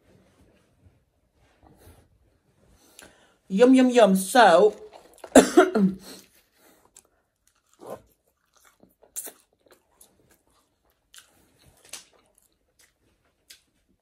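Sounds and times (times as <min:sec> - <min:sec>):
person chewing food: 0:04.8 - 0:05.4, 0:06.1 - 0:14.0.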